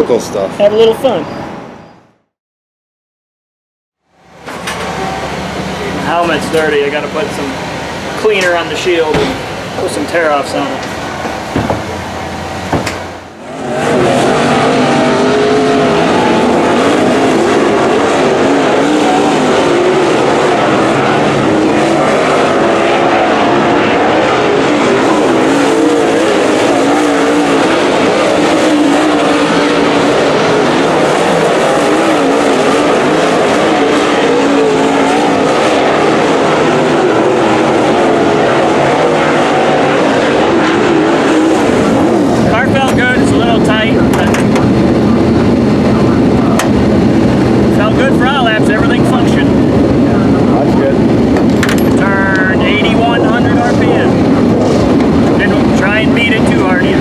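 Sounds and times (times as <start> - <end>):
race car engines running hard: 4.3 - 57.0.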